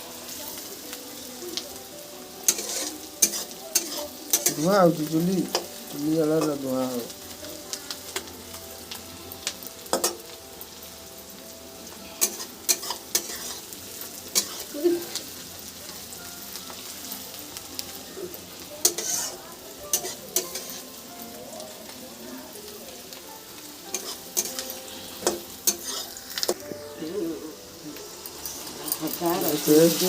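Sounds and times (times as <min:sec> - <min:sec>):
masala sizzling in oil: 0:00.0 - 0:30.0
metal spatula scraping pan: 0:02.4 - 0:05.7, 0:12.1 - 0:13.7, 0:14.3 - 0:14.8, 0:18.8 - 0:20.9, 0:23.9 - 0:26.6, 0:28.2 - 0:30.0.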